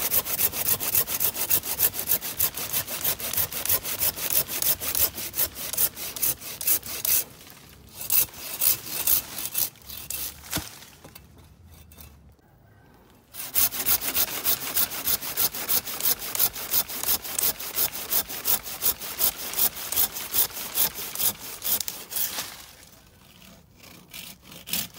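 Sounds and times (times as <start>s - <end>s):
hand saw cutting wood: 0.0s - 10.7s, 13.3s - 24.9s.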